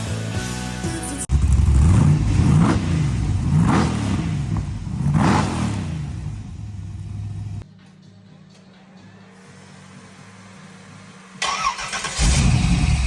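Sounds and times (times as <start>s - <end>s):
car engine revving: 1.3s - 7.6s.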